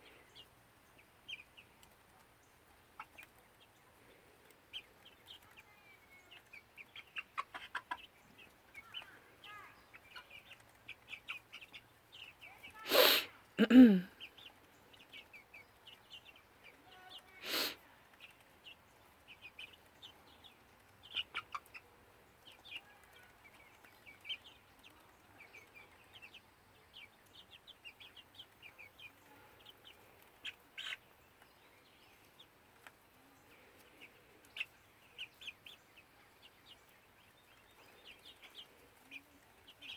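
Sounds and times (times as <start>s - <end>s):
hens clucking softly: 1.2s - 5.4s, 6.4s - 9.3s, 19.3s - 26.4s
loud sharp hen calls: 12.8s - 13.8s, 17.4s - 17.8s.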